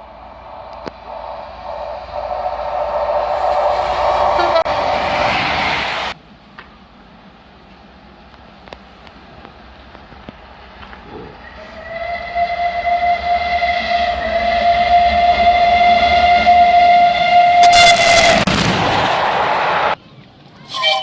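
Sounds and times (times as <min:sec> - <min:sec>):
train whistle: 0:00.0 - 0:05.4, 0:11.5 - 0:18.5, 0:20.7 - 0:21.0
loud rushing noise: 0:00.0 - 0:06.3, 0:17.0 - 0:20.0
train rumble: 0:00.0 - 0:21.0.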